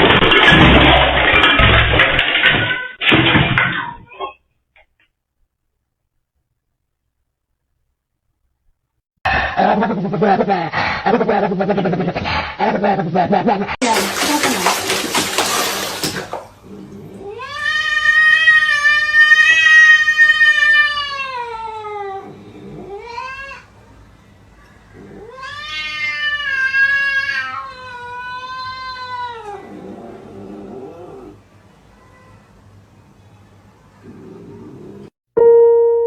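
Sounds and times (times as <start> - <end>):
cat yowling: 17.0 - 23.7, 25.0 - 29.8.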